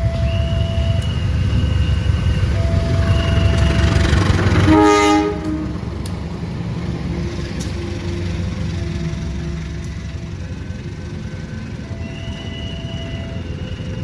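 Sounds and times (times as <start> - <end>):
train rumbling past: 0.0 - 14.0
train horn blast: 2.8 - 6.0.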